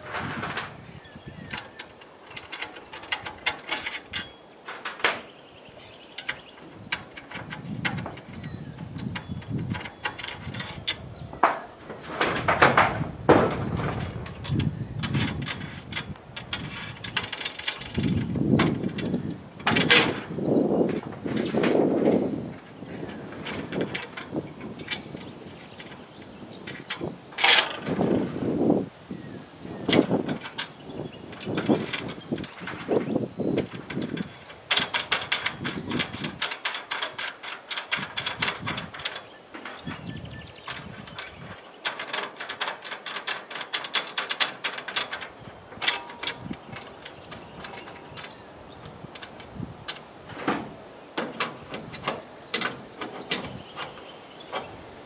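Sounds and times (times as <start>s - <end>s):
clicks and knocks of bolts fitted: 1.5s - 5.3s, 6.1s - 20.3s, 29.9s - 32.9s, 33.6s - 40.0s, 40.6s - 54.7s.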